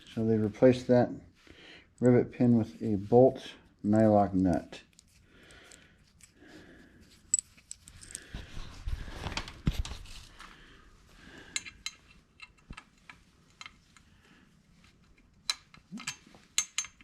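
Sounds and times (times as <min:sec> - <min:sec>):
metal tools clinking and rattling: 0:07.3 - 0:08.4, 0:15.5 - 0:17.0.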